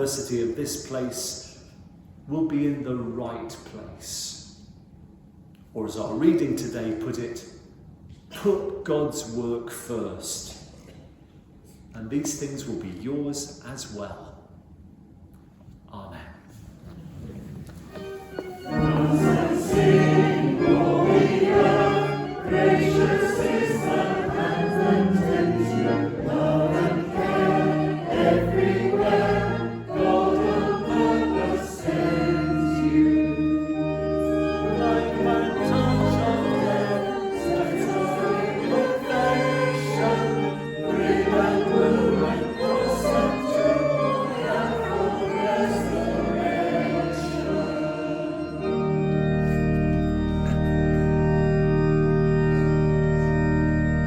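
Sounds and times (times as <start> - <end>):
low held notes: 17.0 - 54.0
choir singing a hymn: 17.9 - 53.6.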